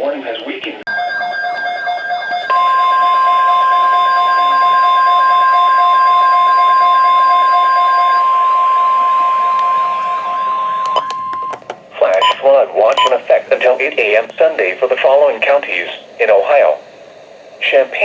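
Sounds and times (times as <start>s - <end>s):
rapid pulsing electronic alarm: 0.9s - 13.2s
steady alarm tone: 0.9s - 13.2s.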